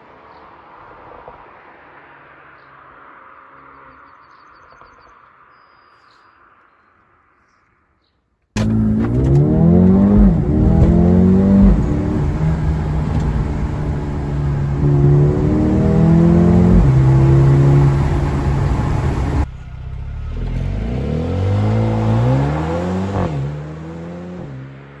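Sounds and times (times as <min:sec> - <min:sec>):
car engine accelerating hard: 0:08.6 - 0:25.0.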